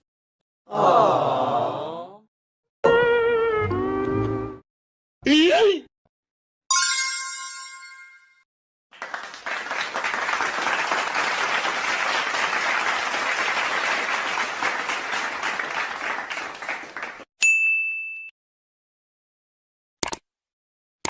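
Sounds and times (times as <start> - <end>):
bright bell ding: 6.7 - 8.4, 17.4 - 18.3
crowd clapping: 8.9 - 17.3.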